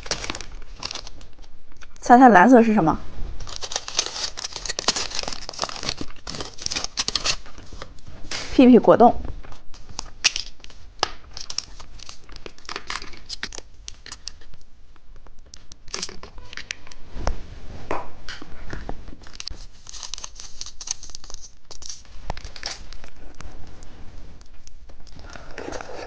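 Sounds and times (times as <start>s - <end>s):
plastic packaging crinkling: 0.0s - 2.0s, 3.4s - 8.1s, 9.4s - 14.7s, 15.4s - 17.0s, 19.2s - 23.4s.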